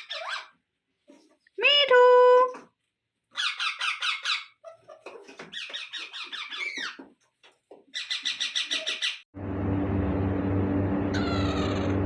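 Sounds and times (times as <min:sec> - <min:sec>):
parakeet chirping squeaks: 0:00.0 - 0:00.5, 0:05.5 - 0:07.0.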